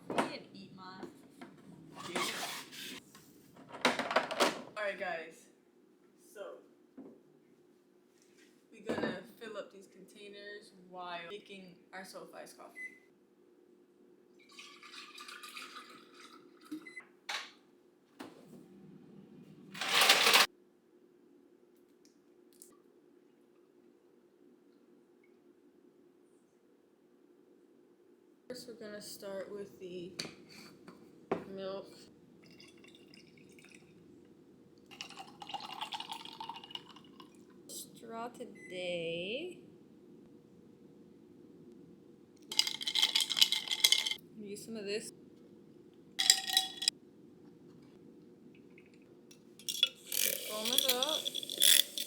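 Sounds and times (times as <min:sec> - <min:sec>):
milk being poured: 0:14.4 - 0:16.8, 0:32.4 - 0:34.0, 0:34.8 - 0:37.6, 0:42.5 - 0:44.2
container clack: 0:19.8 - 0:20.5, 0:42.5 - 0:44.2
rustly pouring and handling: 0:34.9 - 0:37.3, 0:42.5 - 0:44.2.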